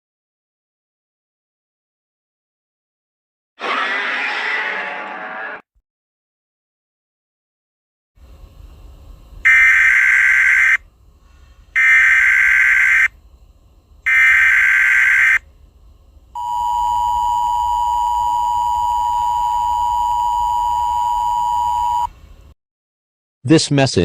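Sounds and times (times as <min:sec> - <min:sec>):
high digital data tones: 0:11.8 - 0:13.1, 0:14.1 - 0:15.4
two-tone attention signal: 0:16.4 - 0:22.1.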